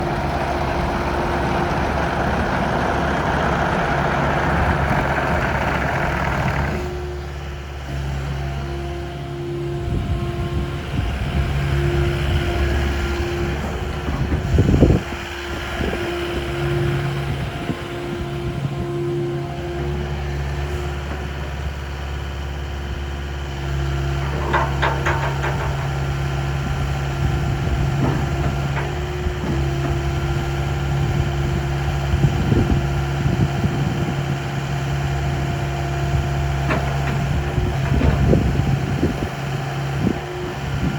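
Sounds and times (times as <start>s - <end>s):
excavator diesel engine idling: 0.0s - 40.9s.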